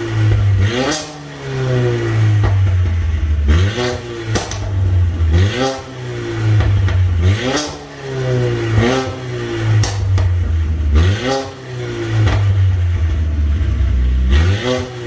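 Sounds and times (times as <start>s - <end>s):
car engine revving: 0.0s - 15.0s
exhaust pops and crackles: 2.4s - 5.2s, 6.5s - 7.8s, 9.8s - 10.5s, 12.2s - 13.2s.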